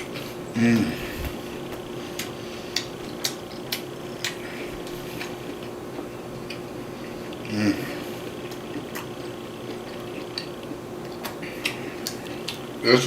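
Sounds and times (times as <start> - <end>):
chewing with wet mouth clicks: 1.2 - 7.5, 8.2 - 12.8.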